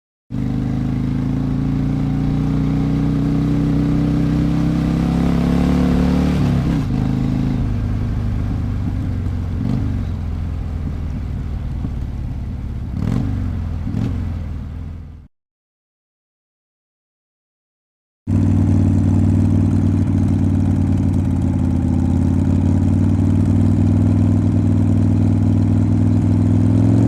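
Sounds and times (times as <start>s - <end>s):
motorcycle engine revving: 0.3s - 15.3s, 18.3s - 27.0s
motorcycle throttle blips: 6.4s - 15.0s, 18.3s - 27.0s.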